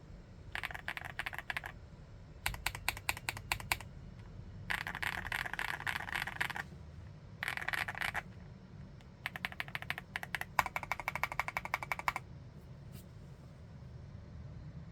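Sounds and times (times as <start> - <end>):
mechanical keyboard typing: 0.6 - 1.8, 2.4 - 3.9, 4.7 - 6.7, 7.4 - 8.4, 9.1 - 12.2.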